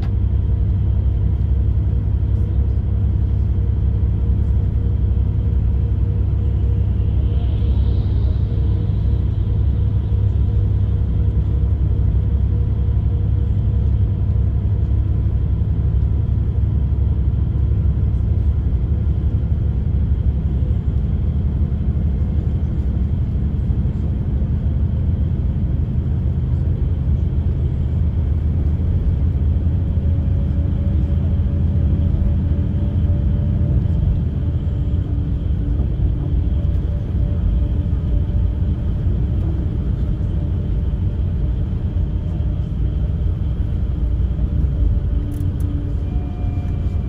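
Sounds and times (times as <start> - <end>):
bus engine rumble: 0.0 - 47.0
faint whine: 1.3 - 15.4, 17.3 - 47.0.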